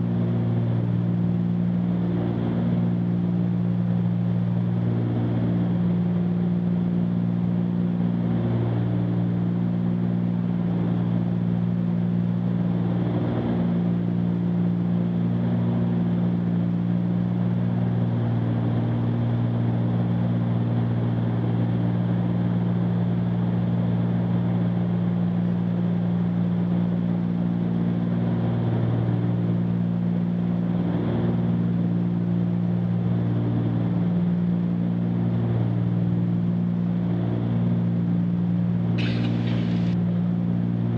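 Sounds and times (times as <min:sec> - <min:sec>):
airplane engines droning: 0:00.0 - 0:40.9.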